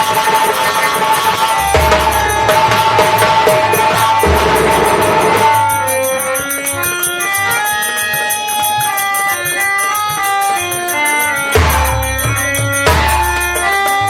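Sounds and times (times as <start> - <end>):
drums: 0.0 - 6.8, 11.4 - 14.0
reed instrument melody: 0.0 - 14.0.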